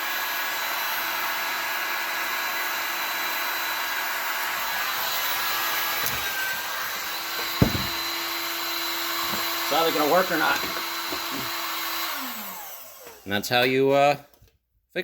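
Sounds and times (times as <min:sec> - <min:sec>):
hot-air blower running: 0:00.0 - 0:13.4
small knock: 0:07.4 - 0:08.1.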